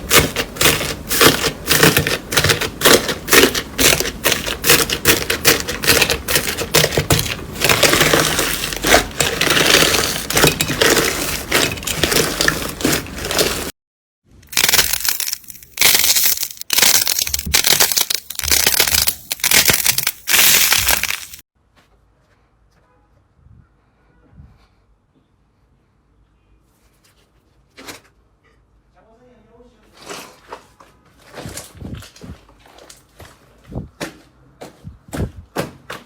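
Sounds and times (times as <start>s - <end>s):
slime squeezed crackling pops: 14.5s - 21.4s.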